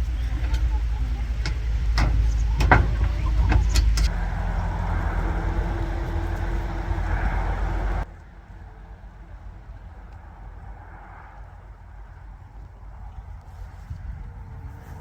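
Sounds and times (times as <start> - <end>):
sharp clicks and knocks: 0.0 - 4.2
engine running: 0.0 - 14.0.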